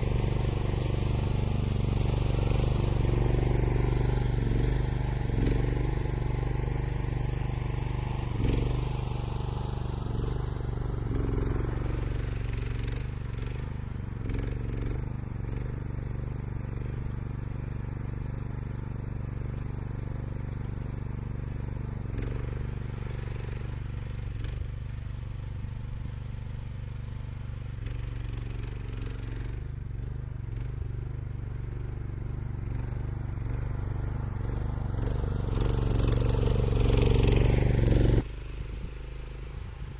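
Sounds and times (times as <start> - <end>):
loader engine running: 0.0 - 14.6.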